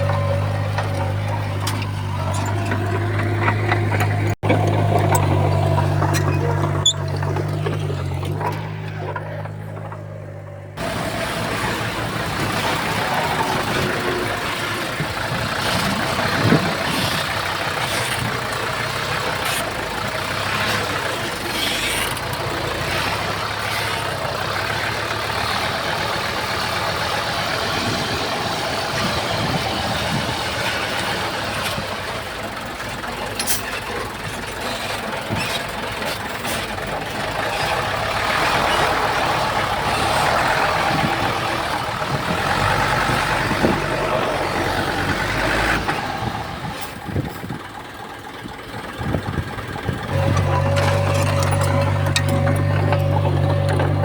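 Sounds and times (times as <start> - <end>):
metallic clanks and knocks: 0.0 - 10.4, 50.1 - 54.0
heavy diesel machine running: 0.0 - 54.0.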